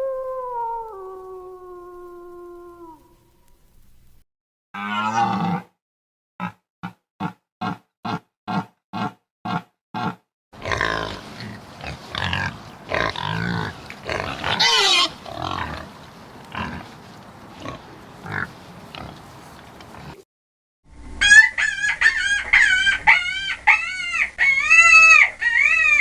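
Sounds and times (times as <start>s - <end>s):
animal grunts: 7.2s - 20.2s
animal squeals: 10.6s - 20.2s, 21.3s - 26.0s.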